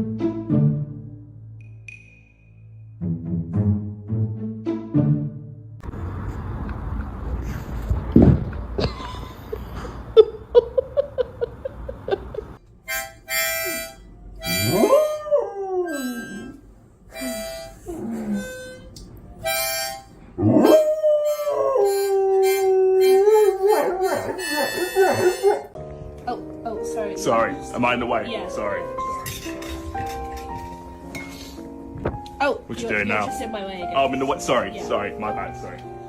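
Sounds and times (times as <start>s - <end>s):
dog howling and yipping: 14.5s - 16.5s, 20.4s - 25.8s.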